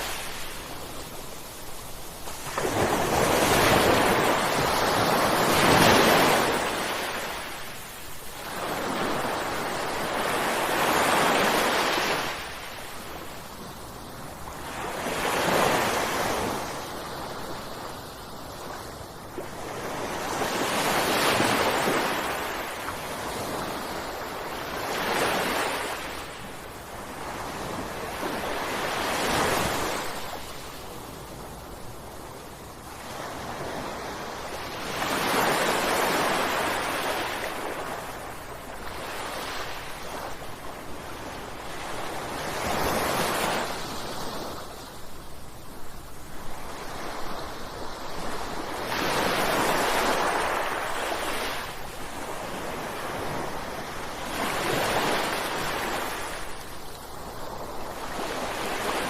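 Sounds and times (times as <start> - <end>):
ocean waves breaking: 0.0 - 13.2.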